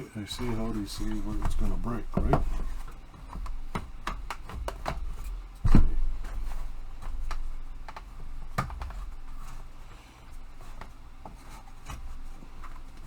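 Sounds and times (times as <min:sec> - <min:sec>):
wooden panels clicking and knocking: 0:00.3 - 0:09.6.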